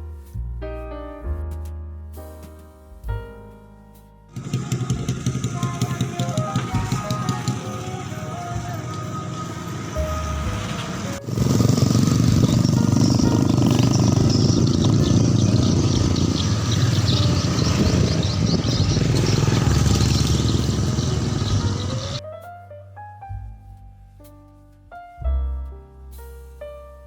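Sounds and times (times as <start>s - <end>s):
background music: 0.0s - 27.0s
piano music: 0.0s - 27.0s
motorcycle running: 4.3s - 22.2s.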